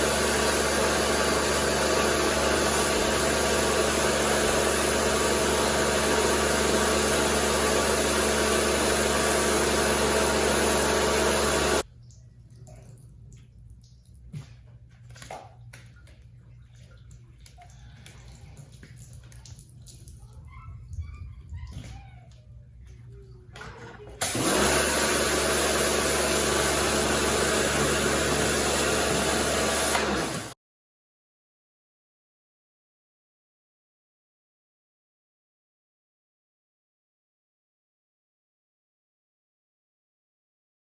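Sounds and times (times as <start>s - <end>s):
pressure washer motor humming: 0.0s - 11.8s, 24.2s - 30.6s.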